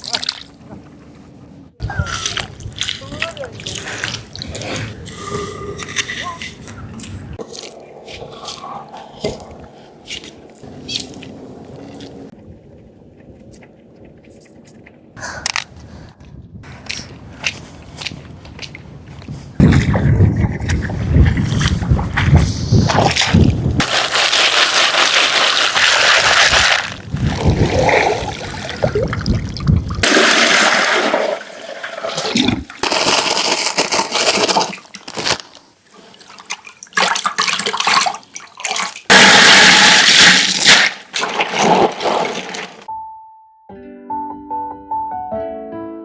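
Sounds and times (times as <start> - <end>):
water running and splashing: 23.0 - 42.9.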